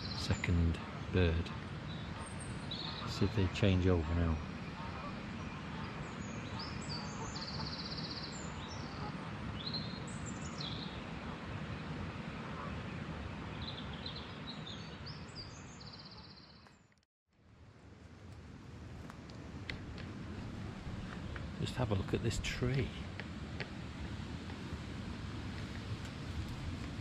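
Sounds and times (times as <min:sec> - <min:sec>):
small birds singing: 0:00.0 - 0:11.7, 0:12.6 - 0:17.0.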